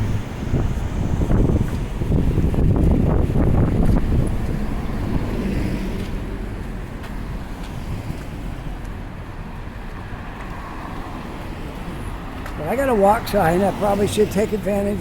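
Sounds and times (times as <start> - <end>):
wind on microphone: 0.0 - 6.6
heavy vehicle engine rumble: 0.0 - 15.0.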